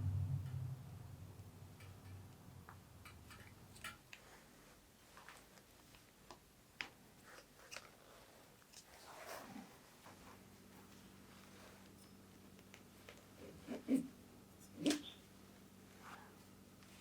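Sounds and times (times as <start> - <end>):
small metal parts clicking and tapping: 1.8 - 4.2.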